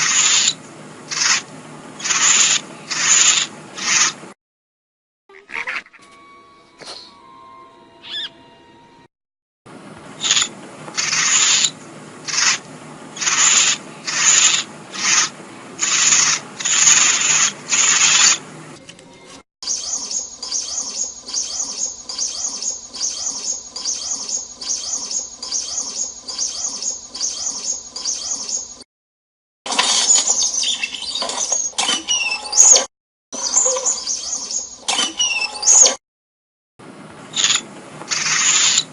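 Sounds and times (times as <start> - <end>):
high chittering chirps: 0.0 - 1.4, 2.0 - 4.2, 8.0 - 8.4, 10.2 - 12.6, 13.2 - 18.4, 19.6 - 28.8, 29.9 - 36.0
raspy creature hissing calls: 0.0 - 1.4, 2.0 - 4.2, 10.2 - 12.6, 13.2 - 18.4.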